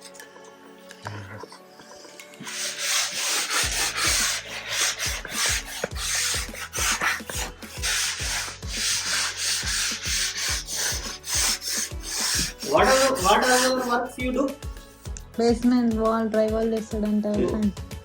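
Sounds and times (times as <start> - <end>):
sandpaper scraping drywall: 2.4 - 14.0.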